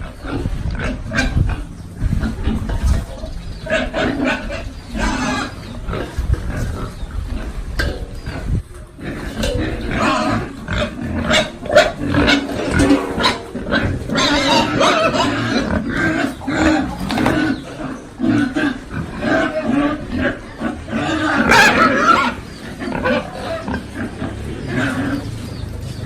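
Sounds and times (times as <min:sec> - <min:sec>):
pigs grunting: 0:00.0 - 0:26.0.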